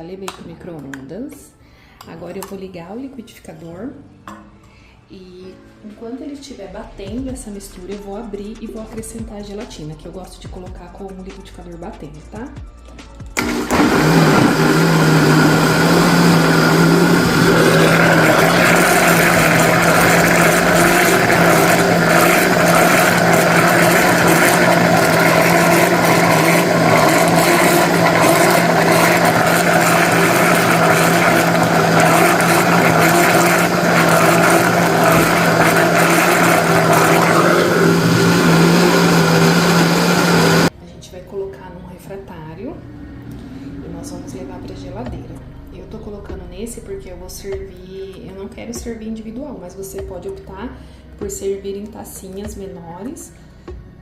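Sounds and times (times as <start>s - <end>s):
blender running: 13.4s - 40.7s.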